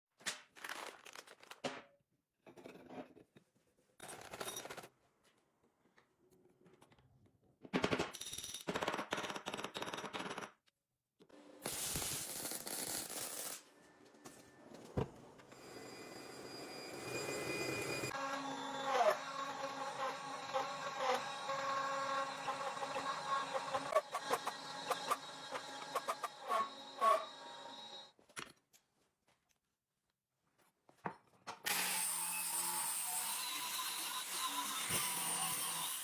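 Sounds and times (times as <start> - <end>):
steady machine noise: 16.7 - 28.1.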